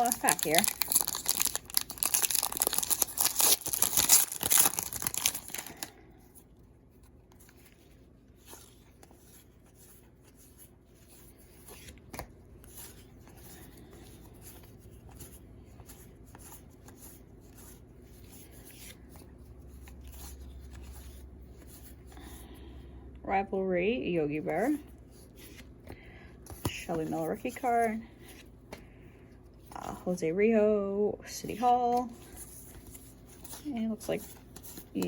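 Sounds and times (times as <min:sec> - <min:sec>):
wrapper tearing and crinkling: 0:00.0 - 0:05.9.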